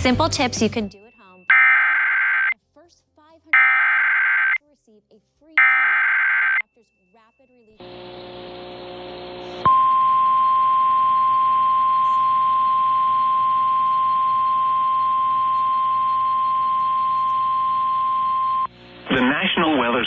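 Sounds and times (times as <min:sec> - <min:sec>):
steady high alarm beep: 0:00.7 - 0:02.6, 0:03.6 - 0:04.6, 0:05.6 - 0:07.8, 0:09.7 - 0:18.7
faint receiver hum: 0:07.8 - 0:20.0.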